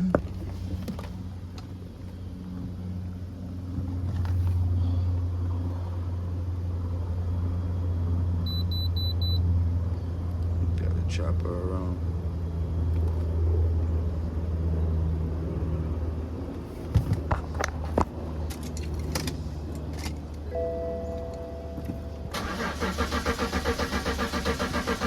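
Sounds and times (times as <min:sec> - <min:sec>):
steady low hum: 0:00.0 - 0:22.4
starter motor cranking engine: 0:22.3 - 0:25.0.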